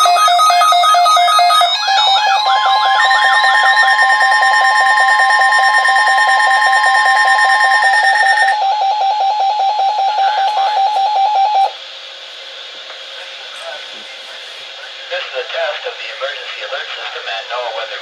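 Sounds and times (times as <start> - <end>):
rapid pulsing beep: 0.0 - 11.8
steady high alarm tones: 0.0 - 12.1.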